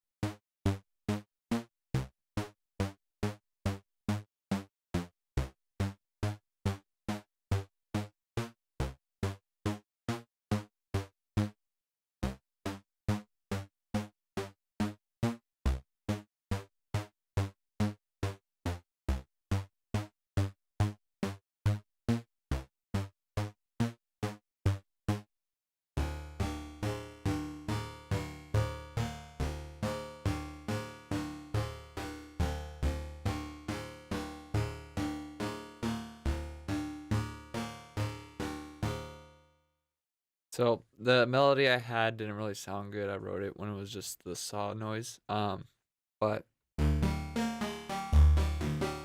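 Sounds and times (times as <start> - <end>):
synthesizer plucked melody: 26.0 - 39.4, 46.8 - 49.0.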